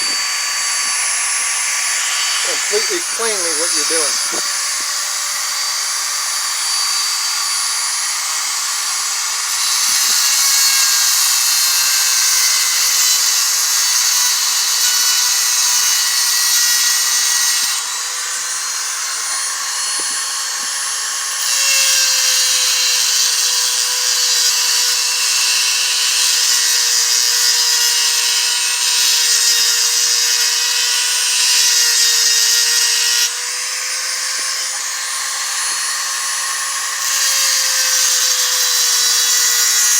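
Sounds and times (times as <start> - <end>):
steel grinding on stone: 0.0 - 5.9, 34.2 - 39.9.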